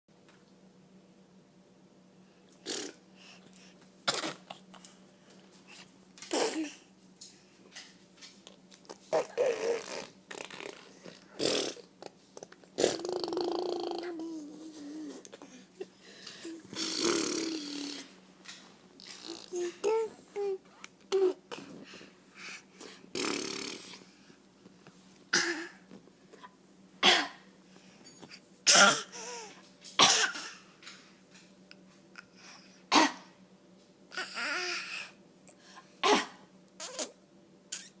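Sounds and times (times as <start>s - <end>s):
lips blowing raspberry trill: 2.6s - 3.0s, 9.2s - 14.2s, 16.7s - 18.1s, 23.1s - 24.0s, 36.8s - 38.0s.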